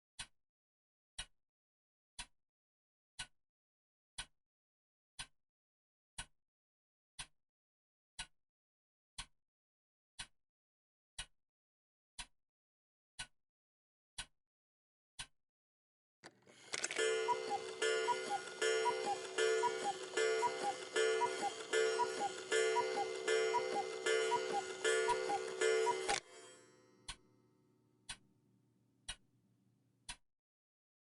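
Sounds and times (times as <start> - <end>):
cuckoo clock call: 16.6 - 26.7
clock ticking: 16.7 - 26.5
steady ringing tone: 16.8 - 27.0.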